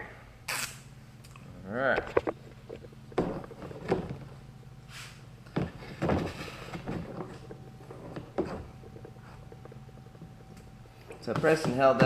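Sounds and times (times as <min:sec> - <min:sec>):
knocks and rubbing on plastic: 0:02.1 - 0:04.4, 0:05.5 - 0:12.0
short hiss: 0:04.9 - 0:05.2.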